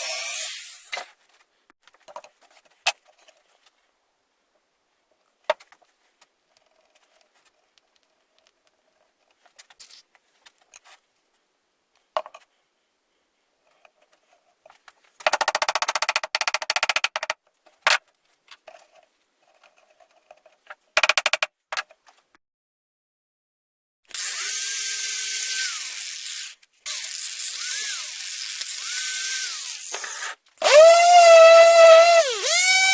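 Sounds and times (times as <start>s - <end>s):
sharp clicks: 15.3s - 17.4s, 21.0s - 21.5s
power screwdriver rattling: 24.1s - 32.9s.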